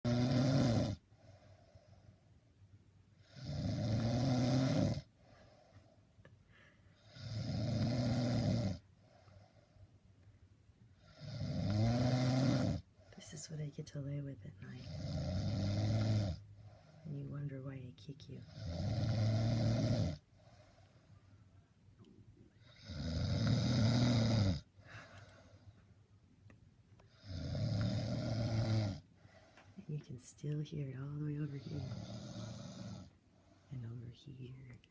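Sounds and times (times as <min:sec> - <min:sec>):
man snoring: 0:00.0 - 0:01.0, 0:03.2 - 0:05.1, 0:07.0 - 0:08.8, 0:11.0 - 0:12.8, 0:14.8 - 0:16.4, 0:18.4 - 0:20.2, 0:22.6 - 0:25.1, 0:27.1 - 0:29.1, 0:31.5 - 0:33.2.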